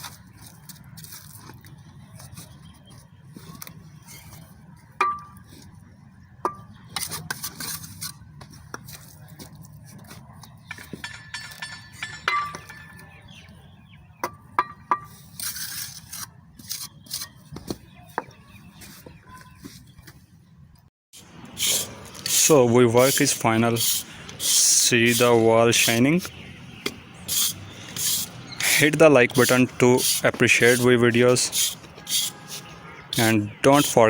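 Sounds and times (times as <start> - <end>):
trowel scraping mortar: 7.0 - 8.2, 15.1 - 17.4, 21.5 - 34.0
trowel clinking on bricks: 10.7 - 13.3, 21.5 - 34.0.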